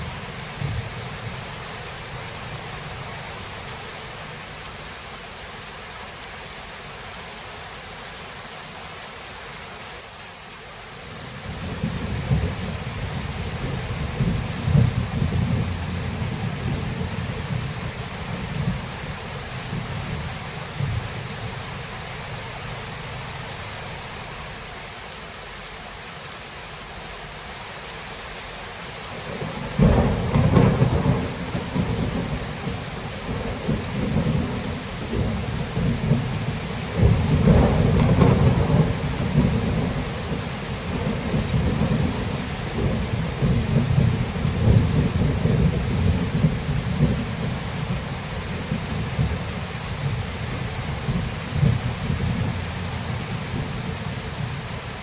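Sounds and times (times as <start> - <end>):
steady rain: 0.0 - 55.0
thunder rumbling: 11.5 - 21.9, 29.2 - 54.8
thunderclap: 13.6 - 17.6, 29.3 - 47.6, 51.1 - 53.8.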